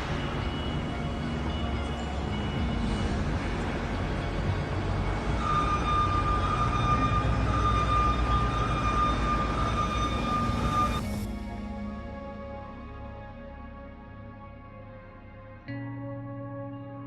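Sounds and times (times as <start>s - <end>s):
mechanical rumble and hiss: 0.0s - 11.9s
high whine: 0.0s - 16.9s
music: 0.0s - 17.0s.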